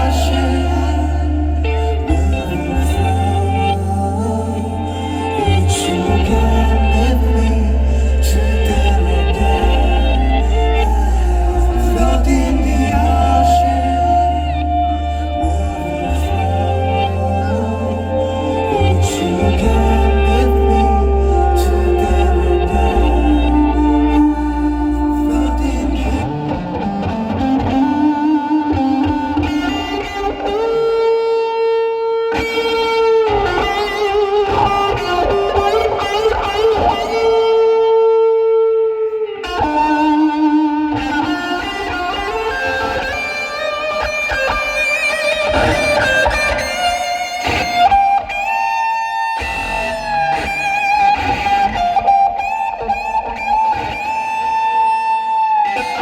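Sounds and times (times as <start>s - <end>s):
low bass: 0.0s - 29.6s
electric guitar slow melody: 0.0s - 56.0s.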